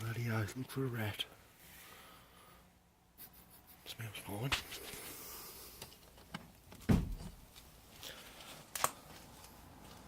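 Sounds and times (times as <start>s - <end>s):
dull knock of car parts: 6.8s - 7.4s.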